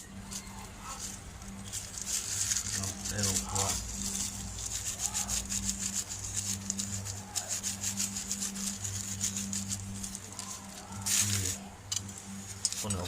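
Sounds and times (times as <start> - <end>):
low hum: 0.0 - 13.0
stirring and scraping in bowl: 0.0 - 13.0.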